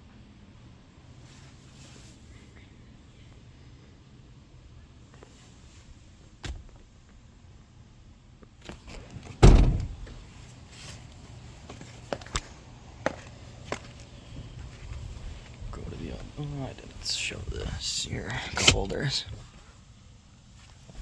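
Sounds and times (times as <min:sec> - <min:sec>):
heavy thump: 0:09.4 - 0:10.2.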